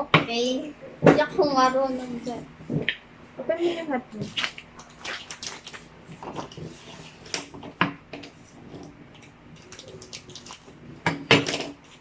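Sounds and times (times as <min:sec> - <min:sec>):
plastic package clicks and rustles: 0:04.2 - 0:07.6, 0:09.2 - 0:10.7.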